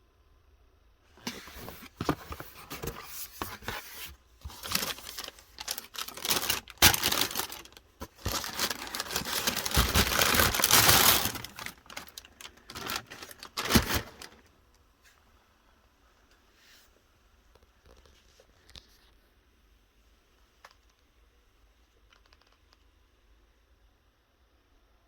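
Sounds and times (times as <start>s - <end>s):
paper crinkling and rustling: 1.2s - 14.5s.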